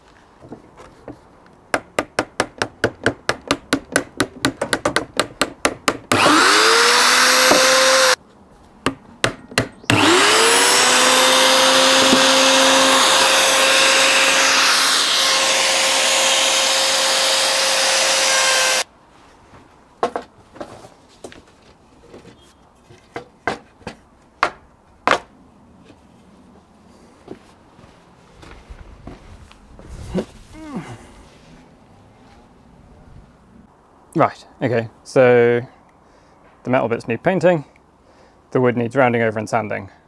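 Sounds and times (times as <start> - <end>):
hammer knocking: 1.8 - 6.3
router motor whining: 6.1 - 8.2, 9.9 - 18.8.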